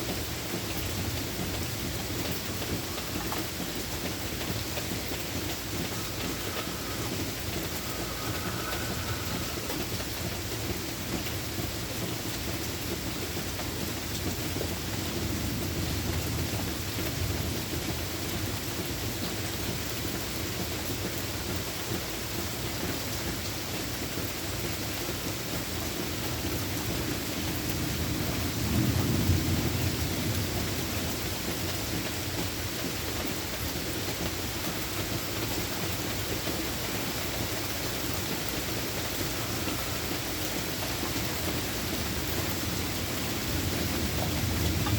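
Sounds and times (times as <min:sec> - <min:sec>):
heavy rain: 0:00.0 - 0:44.9
rumble of thunder: 0:04.5 - 0:11.2, 0:14.3 - 0:19.0, 0:26.8 - 0:32.6, 0:38.7 - 0:44.9.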